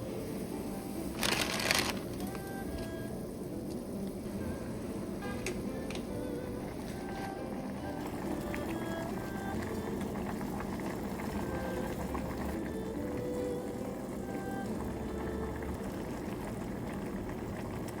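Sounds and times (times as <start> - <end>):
soup bubbling in a pot: 4.3 - 18.0.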